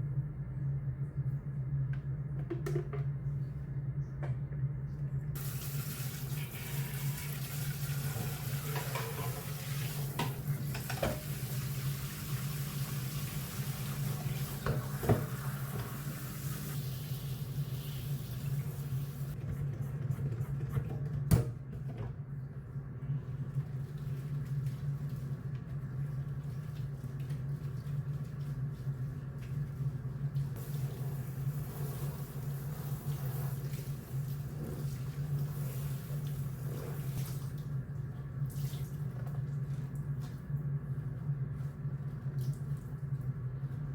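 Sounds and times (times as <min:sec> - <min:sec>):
tap water running: 0:05.4 - 0:19.4, 0:23.6 - 0:40.3.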